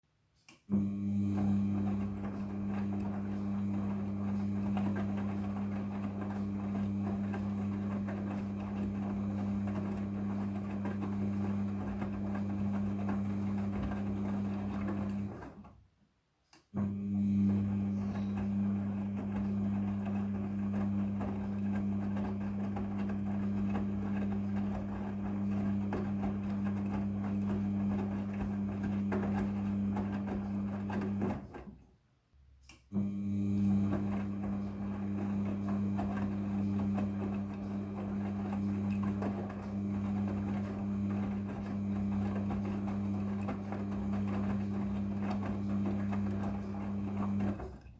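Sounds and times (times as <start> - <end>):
washing machine humming: 0.4 - 15.9, 16.7 - 47.9.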